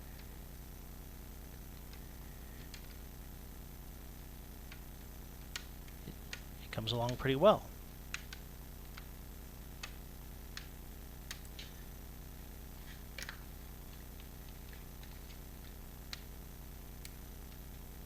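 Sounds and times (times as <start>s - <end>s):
plastic clips snapping into place: 13.1s - 13.5s.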